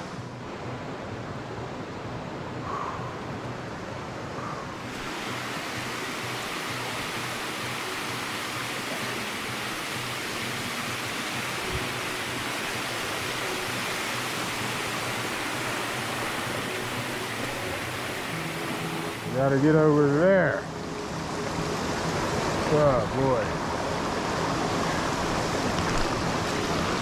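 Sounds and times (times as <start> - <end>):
creek water rushing: 4.8 - 27.0.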